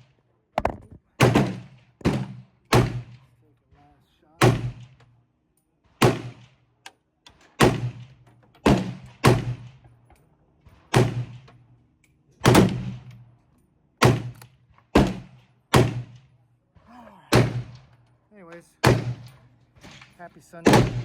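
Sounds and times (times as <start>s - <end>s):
rifle shots with echo: 1.2s - 3.2s, 4.4s - 5.0s, 6.0s - 6.5s, 7.6s - 9.8s, 10.8s - 11.5s, 12.4s - 13.1s, 14.0s - 14.4s, 15.0s - 16.2s, 17.3s - 17.9s, 18.8s - 19.4s, 20.6s - 21.0s.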